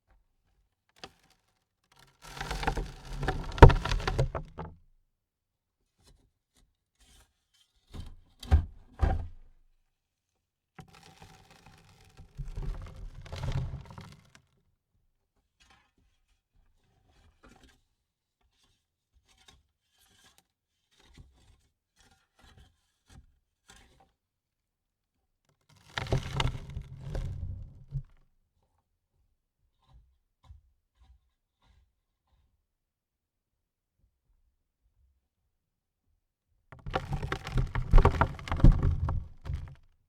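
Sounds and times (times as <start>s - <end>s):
dirt falling onto coffin lid: 36.8s - 39.8s.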